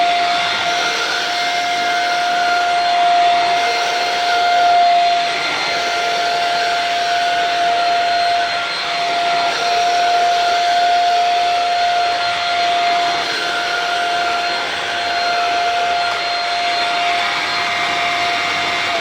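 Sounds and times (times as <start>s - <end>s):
vacuum cleaner running on fabric: 0.0s - 19.0s.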